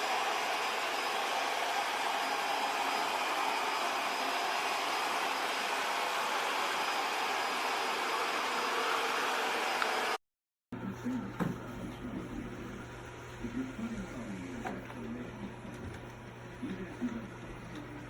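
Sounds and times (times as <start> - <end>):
vacuum cleaner running: 0.0 - 10.2.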